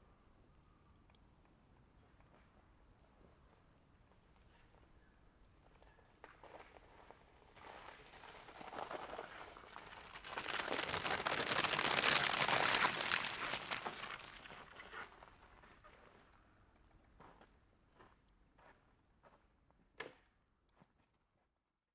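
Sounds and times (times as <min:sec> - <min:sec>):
bicycle tyres cracking thin ice: 0:06.6 - 0:15.6.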